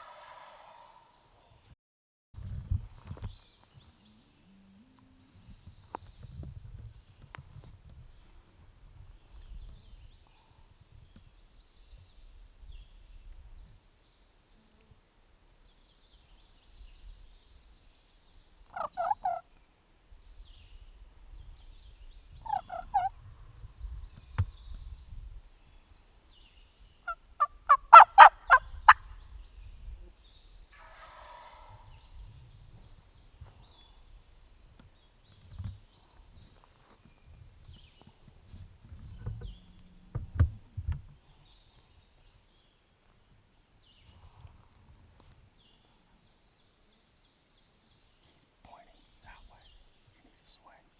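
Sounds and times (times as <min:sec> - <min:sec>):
turkeys gobbling: 0:00.0 - 0:01.1, 0:18.8 - 0:19.4, 0:22.5 - 0:23.1, 0:27.1 - 0:29.0, 0:30.8 - 0:31.8
faint songbird chirps: 0:02.4 - 0:07.4, 0:08.0 - 0:50.9.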